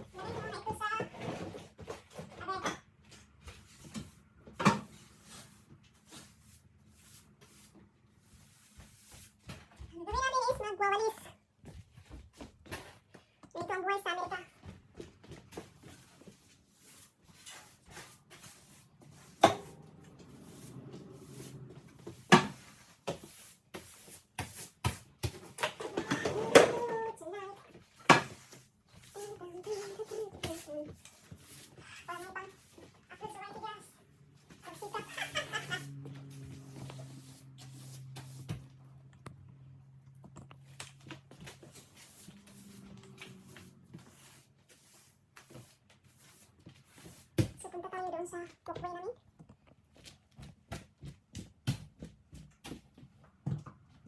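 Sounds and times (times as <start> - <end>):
broom sweeping a floor: 3.0 - 10.7, 15.0 - 38.8, 40.6 - 47.9.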